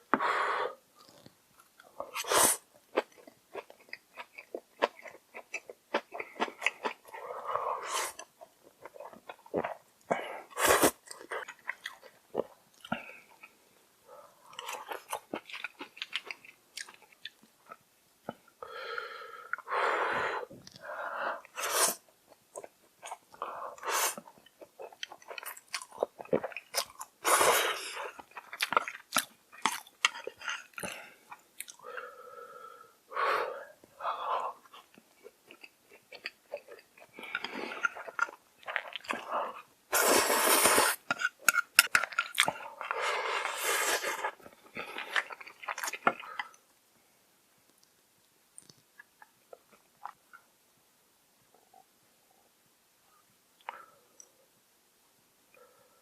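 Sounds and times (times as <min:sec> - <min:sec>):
wet chewing and mouth smacks: 0:28.1 - 0:31.8, 0:34.6 - 0:39.3
noodle slurps: 0:39.9 - 0:41.1.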